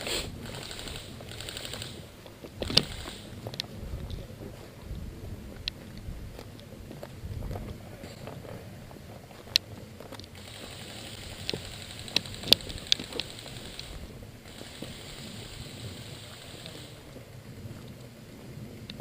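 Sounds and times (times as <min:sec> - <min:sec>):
sharp cracks: 0:00.0 - 0:03.6, 0:10.2 - 0:17.0
airsoft guns firing full-auto: 0:00.4 - 0:02.0, 0:02.6 - 0:03.3, 0:10.4 - 0:17.0.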